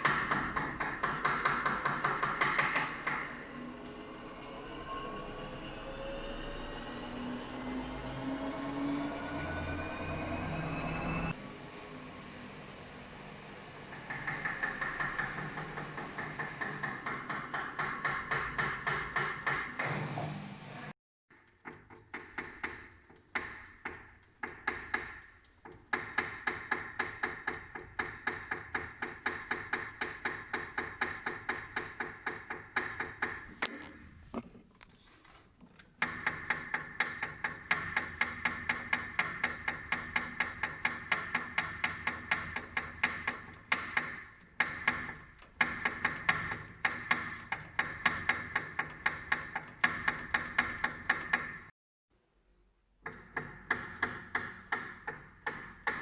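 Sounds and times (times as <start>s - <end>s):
washing machine knocking: 0.0s - 3.5s, 13.9s - 20.0s, 21.7s - 33.4s, 36.0s - 51.7s
washing machine drum running: 0.0s - 10.3s, 11.3s - 19.7s.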